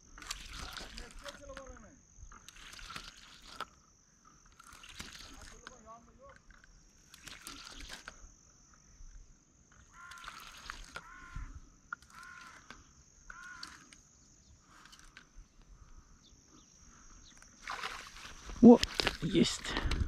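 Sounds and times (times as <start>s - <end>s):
crow cawing: 9.7s - 14.0s.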